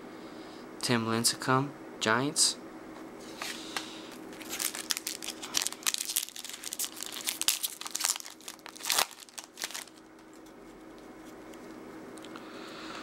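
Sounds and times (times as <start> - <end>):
foil wrapper crinkling and tearing: 4.1 - 10.4.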